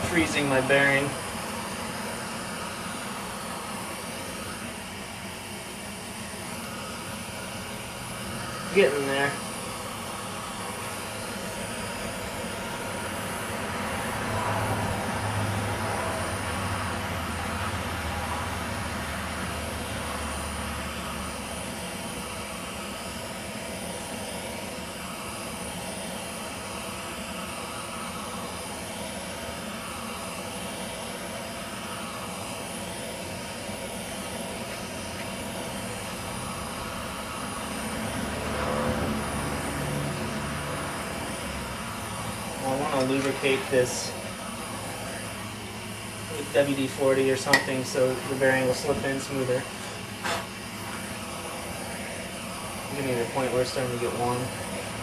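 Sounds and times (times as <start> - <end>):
gas torch flame hissing: 0.0 - 55.0.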